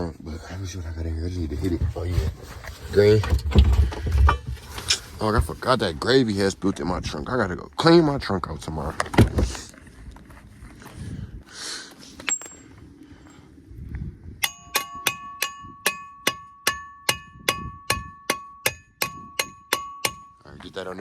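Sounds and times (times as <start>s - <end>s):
rummaging: 1.6s - 5.8s
hammer striking metal: 14.4s - 20.4s.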